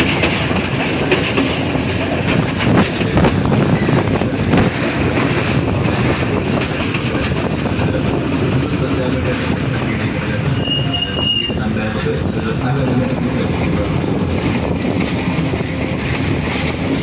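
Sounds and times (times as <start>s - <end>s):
train rumbling: 0.0s - 17.0s
wheels clattering over rails: 0.0s - 17.0s.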